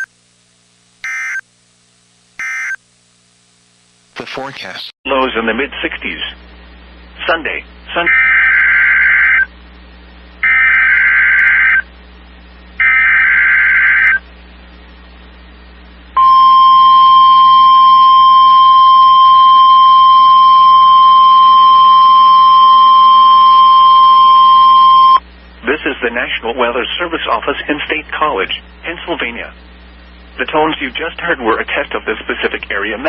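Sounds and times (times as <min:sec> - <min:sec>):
steady alarm tone: 0:01.0 - 0:01.4, 0:16.2 - 0:25.2.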